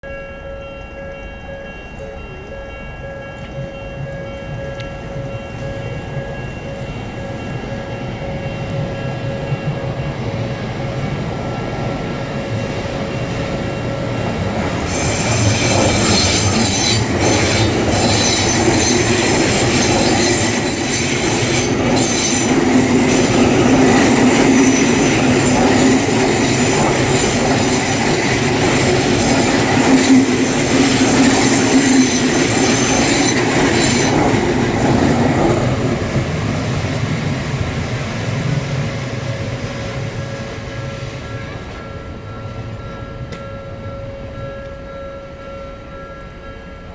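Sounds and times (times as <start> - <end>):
crossing warning bell: 0.0 - 46.9
train wheels clattering: 4.6 - 43.7
wheel squeal: 14.9 - 34.2.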